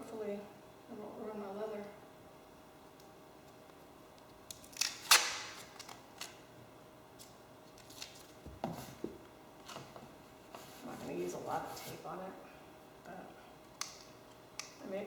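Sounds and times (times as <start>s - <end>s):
adhesive tape pulled off roll: 4.6s - 6.4s.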